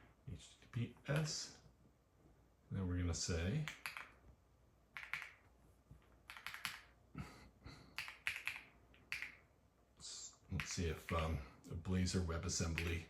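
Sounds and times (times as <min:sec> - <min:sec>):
mechanical keyboard typing: 0:06.3 - 0:06.9.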